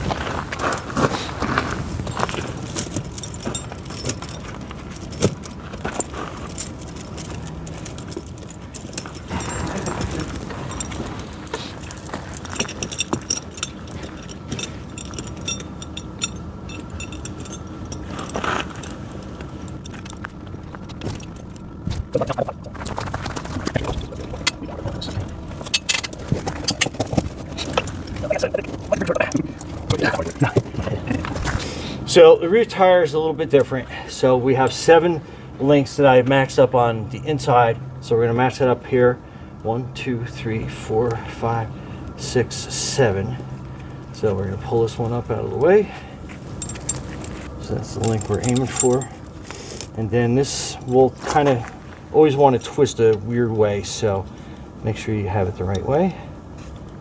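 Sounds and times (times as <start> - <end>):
chain links jangling: 0.6 - 21.8, 23.6 - 32.7, 43.5 - 50.0.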